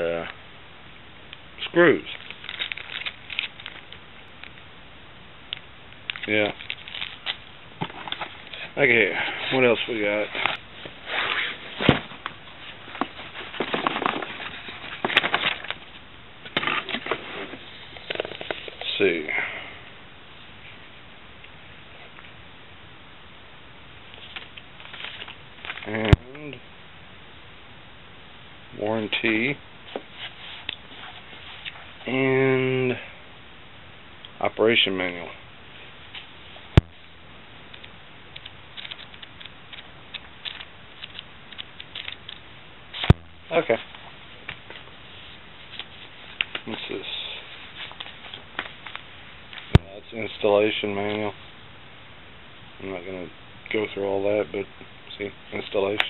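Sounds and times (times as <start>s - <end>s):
plastic and paper crinkling: 2.0s - 4.6s, 6.1s - 18.9s, 24.2s - 26.1s, 43.0s - 49.8s.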